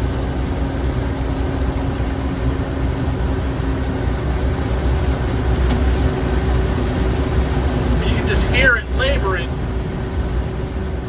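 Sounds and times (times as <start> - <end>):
combine harvester droning: 4.7 - 11.0.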